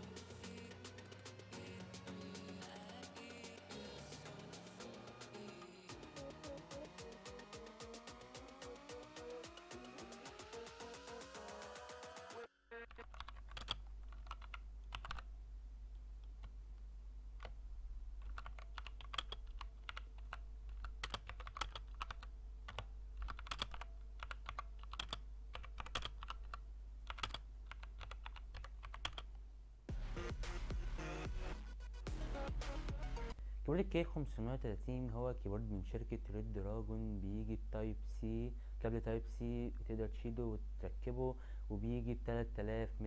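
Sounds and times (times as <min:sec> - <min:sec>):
music: 0:00.0 - 0:12.5, 0:29.9 - 0:33.4
steady low hum: 0:13.4 - 0:43.0
mechanical keyboard key clacks: 0:18.2 - 0:29.2.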